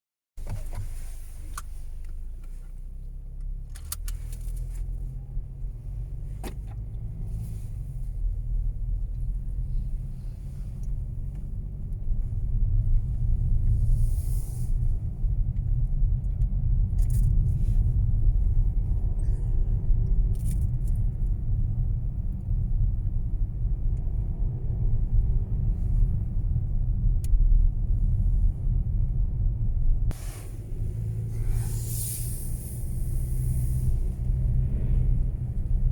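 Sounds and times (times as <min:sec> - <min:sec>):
car road rumble: 0:00.4 - 0:35.9
light rattling clicks: 0:03.4 - 0:04.9.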